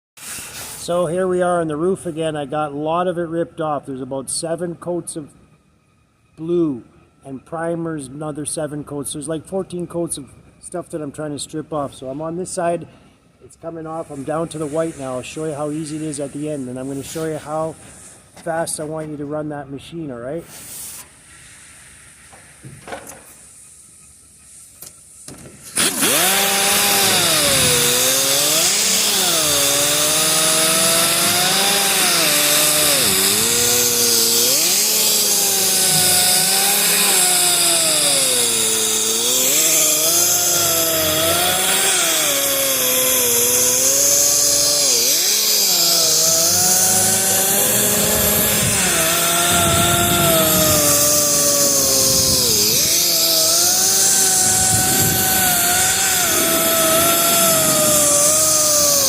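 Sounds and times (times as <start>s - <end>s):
power tool grinding paint: 25.7s - 59.0s.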